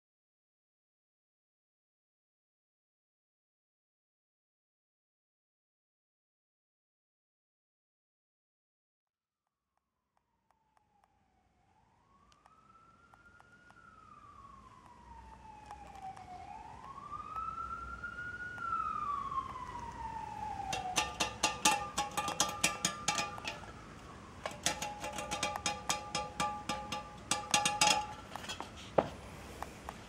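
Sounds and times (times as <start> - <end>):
siren-like wail: 10.4 - 28.6.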